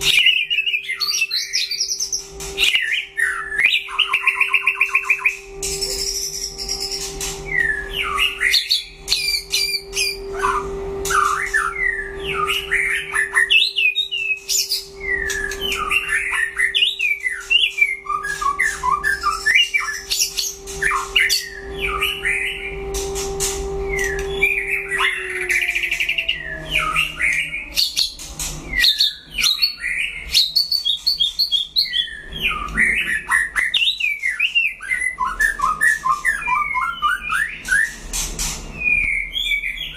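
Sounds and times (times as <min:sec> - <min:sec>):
bird singing whistled phrases: 0:00.0 - 0:22.8, 0:23.8 - 0:38.1, 0:38.8 - 0:39.9
low hum: 0:02.0 - 0:29.4.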